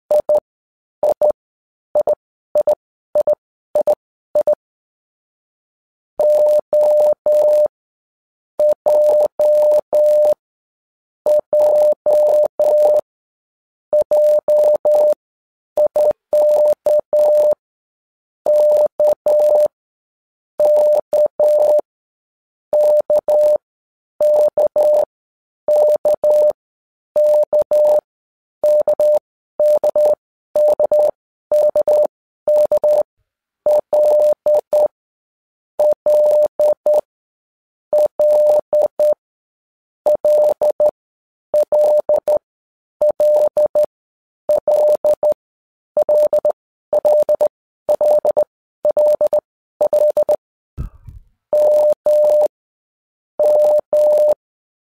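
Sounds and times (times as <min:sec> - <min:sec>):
morse code beeps: 0:06.2 - 0:07.7, 0:08.6 - 0:10.4, 0:11.3 - 0:13.0, 0:14.0 - 0:15.2, 0:15.8 - 0:17.6, 0:18.5 - 0:19.8, 0:20.6 - 0:21.9, 0:22.8 - 0:23.6, 0:24.2 - 0:25.1, 0:25.7 - 0:26.6, 0:27.2 - 0:33.1, 0:33.7 - 0:35.0, 0:35.8 - 0:37.1, 0:38.0 - 0:39.2, 0:40.1 - 0:40.9, 0:41.6 - 0:42.4, 0:43.0 - 0:43.9, 0:44.5 - 0:45.4, 0:46.0 - 0:50.4, 0:51.5 - 0:52.5, 0:53.4 - 0:54.4.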